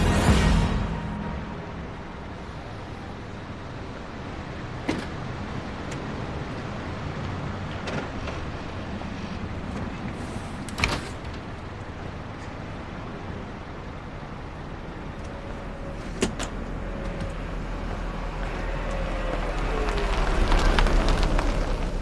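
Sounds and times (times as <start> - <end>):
motor vehicle running: 0.0 - 4.1, 14.6 - 22.0.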